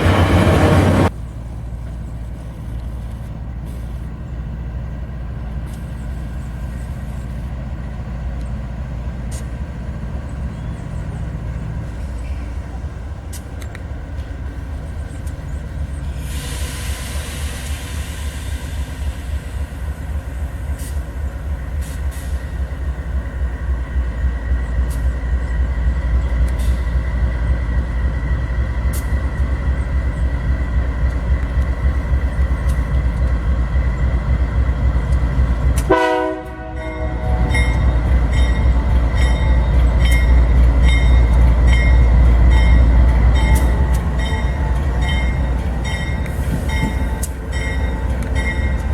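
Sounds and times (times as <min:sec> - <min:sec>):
diesel train engine rumble: 0:00.0 - 0:48.9
train horn blast: 0:35.8 - 0:38.0.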